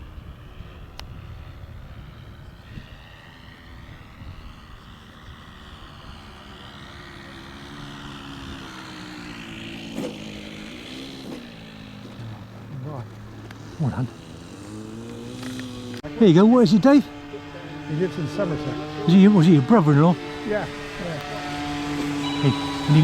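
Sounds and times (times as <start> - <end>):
wind rumble on microphone: 0.0 - 6.6
model aeroplane motor buzzing: 0.0 - 23.0.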